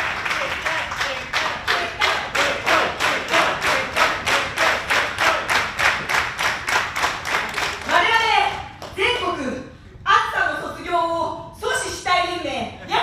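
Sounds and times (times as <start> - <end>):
audience clapping in unison: 0.0 - 9.0.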